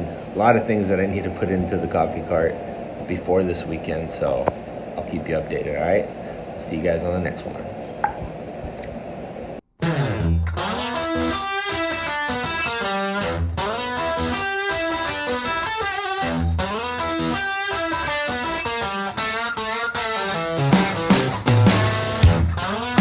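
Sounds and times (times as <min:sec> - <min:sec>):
electric guitar melody: 0:09.8 - 0:23.0.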